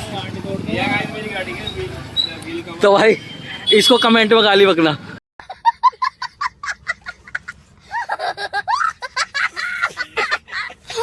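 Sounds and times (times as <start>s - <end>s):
sliding squeals: 1.6s - 2.4s.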